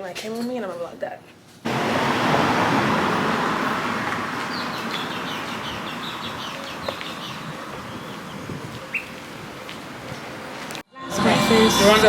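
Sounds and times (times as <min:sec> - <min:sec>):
steady rushing noise: 0:01.7 - 0:10.7
bird chirping: 0:03.3 - 0:09.7.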